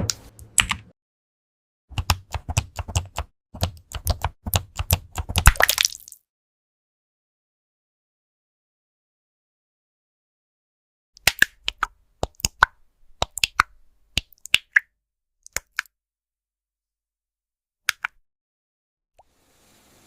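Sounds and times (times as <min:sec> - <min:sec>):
mechanical keyboard typing: 0:02.0 - 0:05.4.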